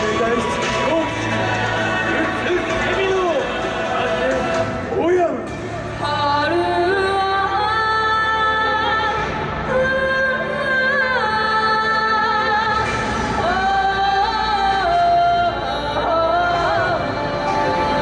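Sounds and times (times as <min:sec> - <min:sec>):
steady musical accompaniment: 0:00.0 - 0:18.0.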